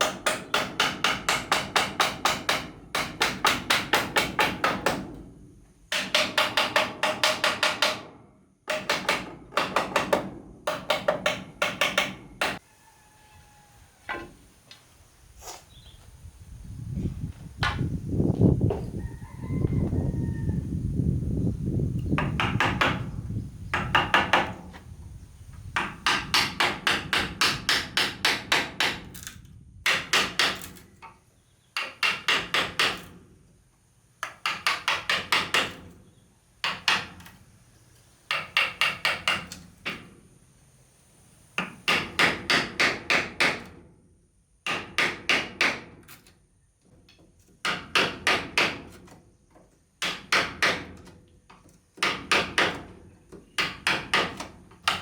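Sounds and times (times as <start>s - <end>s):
hammer striking wood: 0.0s - 5.3s, 5.9s - 12.6s, 17.6s - 17.9s, 22.2s - 23.1s, 23.7s - 24.7s, 25.8s - 29.1s, 29.9s - 30.8s, 31.8s - 33.2s, 34.2s - 35.9s, 36.6s - 37.3s, 38.3s - 40.1s, 41.6s - 43.8s, 44.7s - 46.0s, 47.6s - 49.0s, 50.0s - 51.1s, 52.0s - 53.0s, 53.6s - 55.0s.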